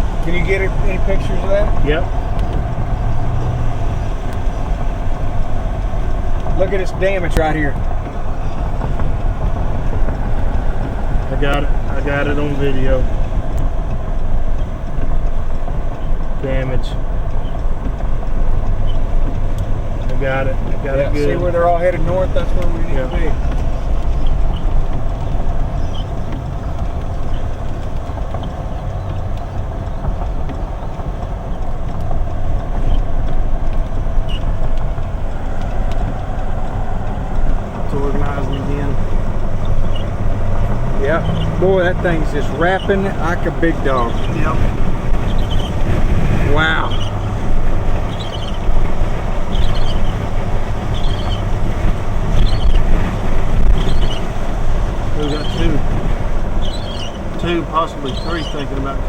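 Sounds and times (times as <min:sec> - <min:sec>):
vehicle road and engine rumble: 0:00.0 - 0:59.0
faint rattling ticks: 0:00.1 - 0:59.0.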